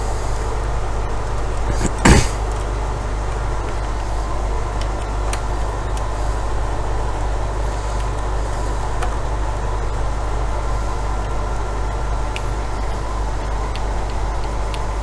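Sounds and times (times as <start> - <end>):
sharp knock: 1.7 - 2.4.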